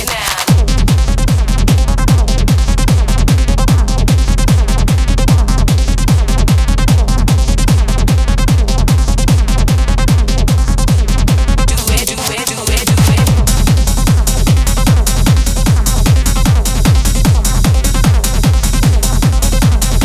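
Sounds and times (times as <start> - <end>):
four-on-the-floor kick drum: 0.5 - 12.1, 12.8 - 20.0
synth noise: 11.7 - 20.0.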